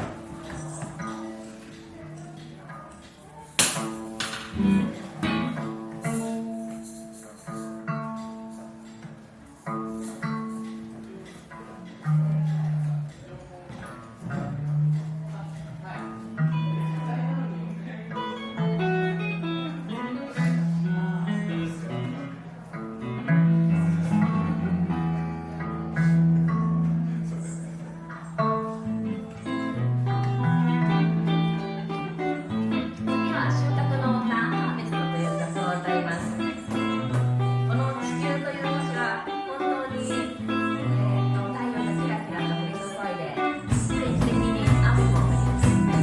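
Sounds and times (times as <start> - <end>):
plucked string instruments: 0.0 - 46.0
percussion hits: 3.6 - 7.4, 43.6 - 46.0
bass notes: 43.6 - 46.0.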